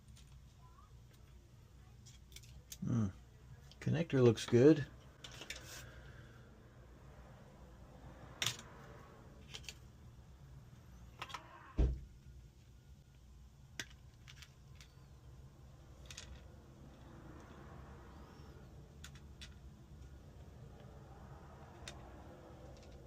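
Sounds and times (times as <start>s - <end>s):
small tools tapping phone parts: 13.7s - 15.1s, 21.6s - 23.0s.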